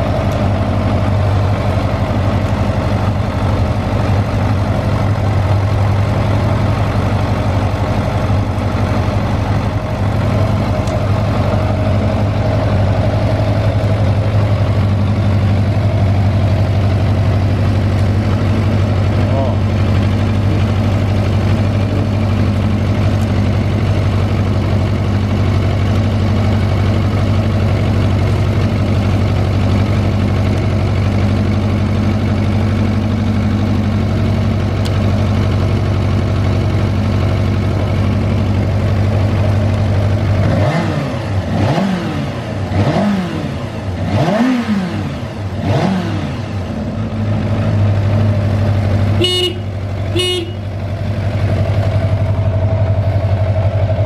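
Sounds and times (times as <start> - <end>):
motorcycle engine idling and revving: 0.0 - 54.0
motorcycle horn: 49.1 - 50.9.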